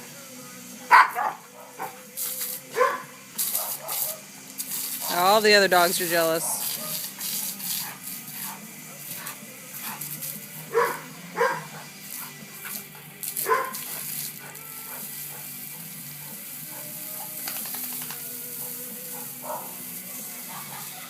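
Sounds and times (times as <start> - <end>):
dog barking: 0.9 - 2.0, 2.8 - 4.2, 10.7 - 11.9, 13.4 - 13.9, 19.1 - 19.8.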